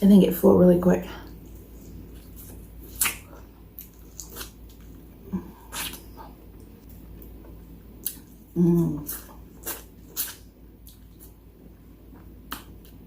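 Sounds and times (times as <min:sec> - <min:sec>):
chewing with lip smacks: 0:01.3 - 0:11.4, 0:12.1 - 0:13.0
person humming: 0:08.6 - 0:09.2.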